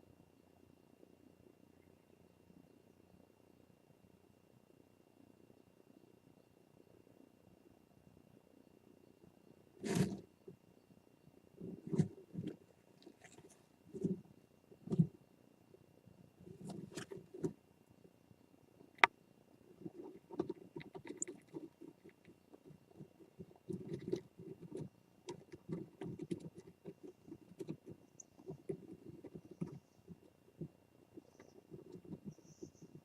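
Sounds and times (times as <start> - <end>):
scratching and shuffling in nest box: 9.8 - 10.6, 11.5 - 15.3, 16.3 - 17.6, 18.8 - 33.0.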